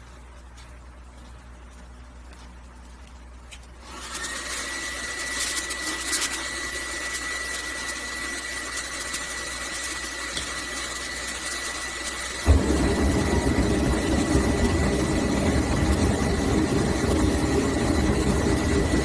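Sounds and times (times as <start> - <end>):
gas burner rushing hiss: 3.9 - 19.0
crackles: 12.4 - 19.0.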